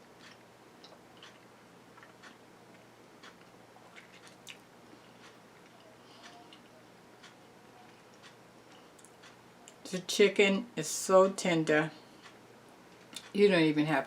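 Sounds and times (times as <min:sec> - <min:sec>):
clicks of someone eating: 0:00.2 - 0:04.6
clock ticking: 0:05.2 - 0:09.4.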